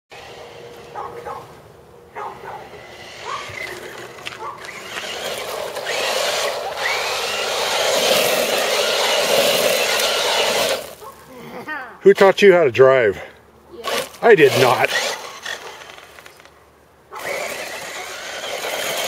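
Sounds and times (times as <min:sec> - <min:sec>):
rc truck motor whining: 0:00.1 - 0:01.4, 0:02.3 - 0:11.0, 0:13.8 - 0:19.0
tires grinding over ground: 0:00.1 - 0:11.2, 0:17.2 - 0:19.0.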